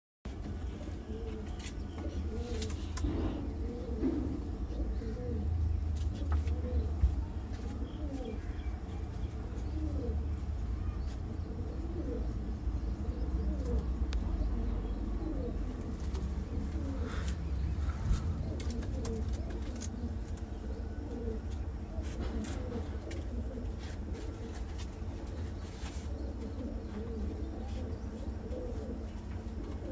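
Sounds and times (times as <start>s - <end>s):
pigeons cooing: 0.3s - 29.9s
steady low rumble: 0.5s - 29.9s
low rumble: 12.3s - 21.5s.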